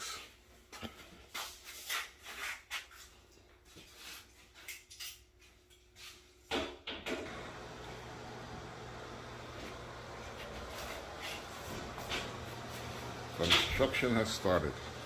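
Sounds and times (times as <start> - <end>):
steady low hum: 7.3 - 15.0.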